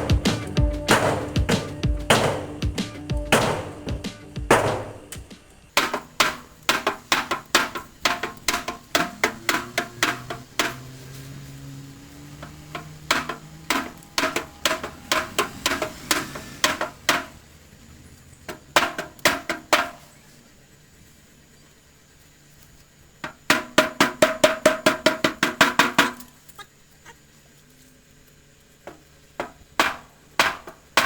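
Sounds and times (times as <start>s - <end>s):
hammer striking sheet metal: 0.0s - 11.0s, 12.4s - 17.4s.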